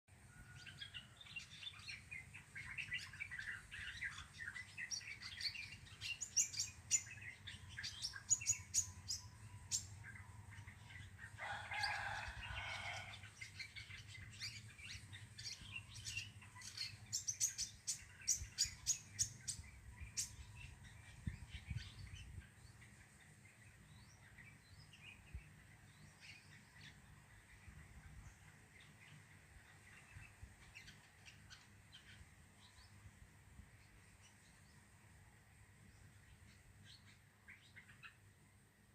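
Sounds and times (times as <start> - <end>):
bird high chirps and twitters: 13.4 - 22.8.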